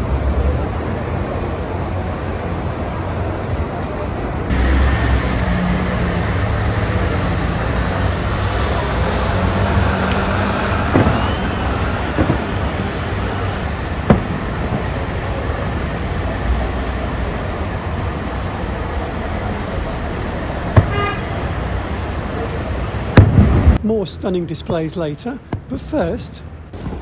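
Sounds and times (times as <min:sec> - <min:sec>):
distant fireworks rumble: 0:00.0 - 0:27.0
sharp firework bangs: 0:07.7 - 0:16.7, 0:20.7 - 0:21.5, 0:23.2 - 0:23.8, 0:26.8 - 0:27.0.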